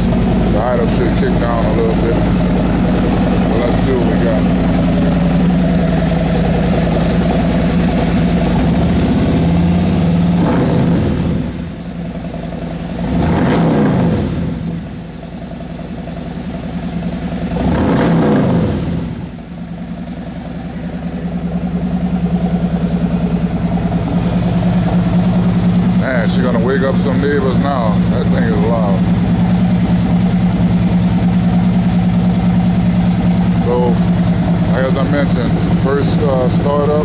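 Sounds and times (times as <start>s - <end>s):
motorcycle engine idling and revving: 0.0s - 37.0s.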